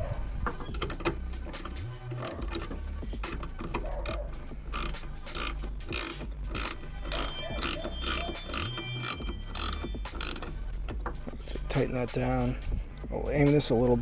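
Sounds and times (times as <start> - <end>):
ratcheting wrench clicking: 0.0 - 11.2.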